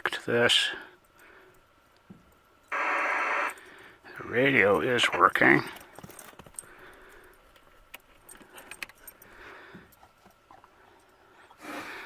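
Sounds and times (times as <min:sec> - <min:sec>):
small metallic rattles: 0:05.4 - 0:11.2.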